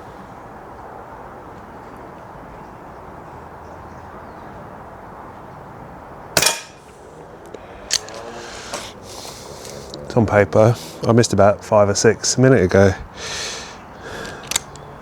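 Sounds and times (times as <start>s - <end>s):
air pistol shot: 6.4s - 6.9s
steady background hiss: 6.4s - 15.0s.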